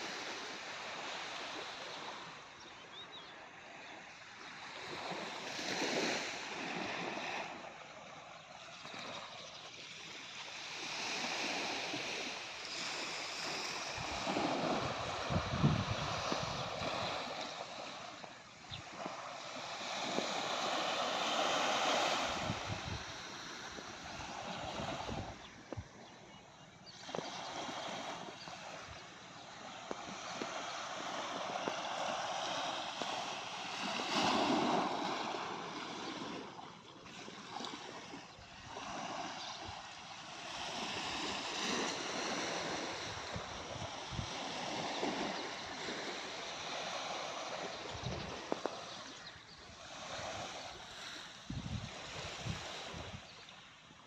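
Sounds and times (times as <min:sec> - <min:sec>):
sea waves washing onto shore: 0:27.1 - 0:53.2.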